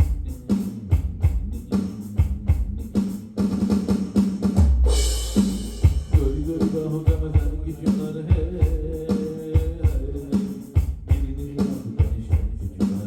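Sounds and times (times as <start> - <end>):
electronic drum beat: 0.0 - 13.0
cymbal crash: 4.8 - 6.9.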